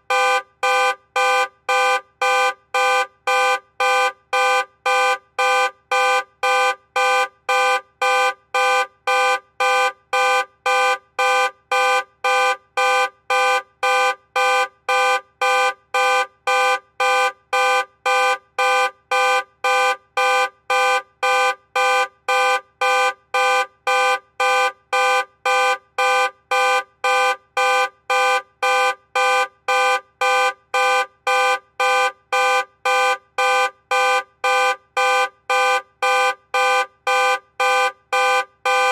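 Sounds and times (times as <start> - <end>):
car alarm beeping: 13.4 - 38.9.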